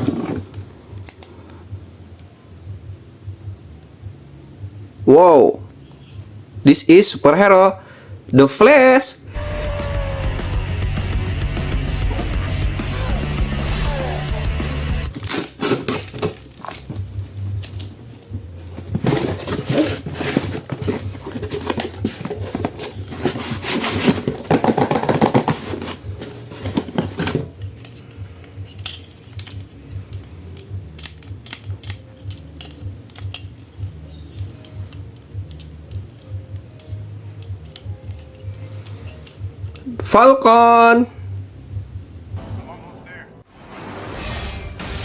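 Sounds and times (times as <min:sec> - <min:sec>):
plastic packaging rustling: 0:15.1 - 0:29.8.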